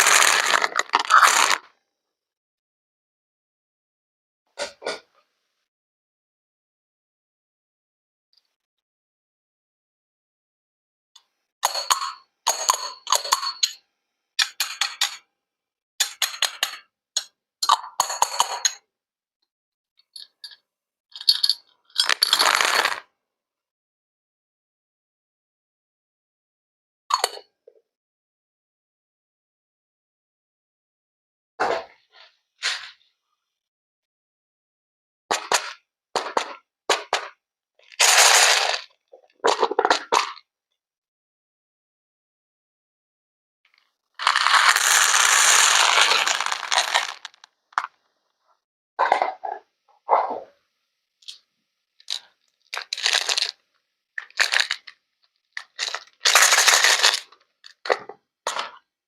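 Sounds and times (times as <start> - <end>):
small hard objects clinking: 0.0 - 1.6, 21.2 - 23.0, 44.2 - 47.9, 52.1 - 53.6, 54.2 - 55.0, 55.6 - 57.3.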